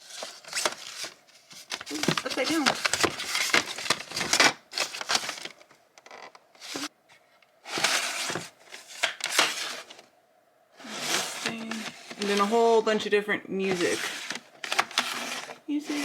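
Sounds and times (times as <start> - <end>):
scraping rustles: 0.0 - 10.1, 10.8 - 13.0, 13.6 - 16.0
plastic cases clacking: 0.2 - 6.9, 13.7 - 15.6.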